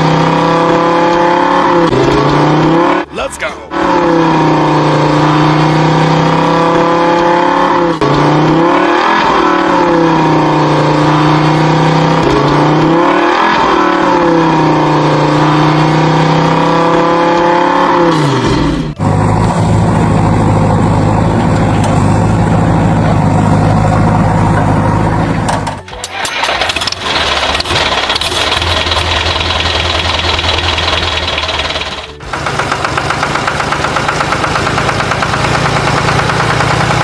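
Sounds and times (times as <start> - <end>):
engine revving: 0.0 - 37.0
low engine drone: 18.0 - 37.0.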